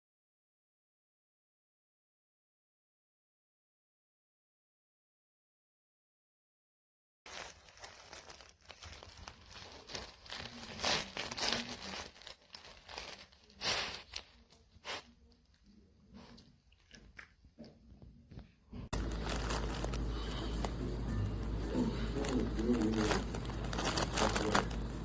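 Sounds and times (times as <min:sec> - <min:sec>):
steady low hum: 0:18.8 - 0:25.0
dog chewing dry treats: 0:22.1 - 0:25.0.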